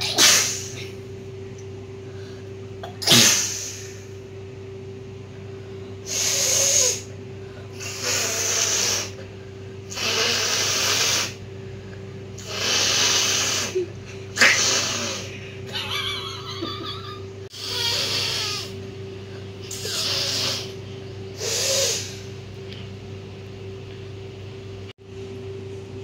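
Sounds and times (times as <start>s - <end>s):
woman blowing her nose: 0.0s - 0.8s, 3.0s - 4.0s, 6.1s - 7.1s, 7.8s - 9.2s, 9.9s - 11.4s, 12.4s - 13.8s, 14.4s - 15.3s
sneeze: 0.0s - 1.0s, 2.8s - 4.0s, 6.1s - 7.1s, 9.9s - 11.4s, 12.4s - 15.3s
wavering nasal sound: 6.1s - 7.1s, 7.8s - 9.2s, 9.9s - 11.4s, 12.4s - 13.8s, 14.4s - 15.4s, 19.7s - 20.8s, 21.4s - 22.3s.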